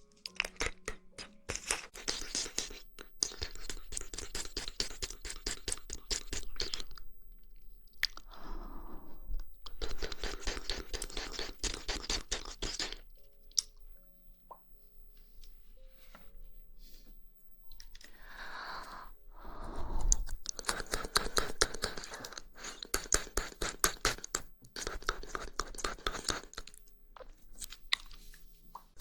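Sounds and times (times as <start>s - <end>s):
wet chewing clicks and squelches: 0.0s - 8.4s, 9.6s - 13.8s, 20.0s - 29.0s.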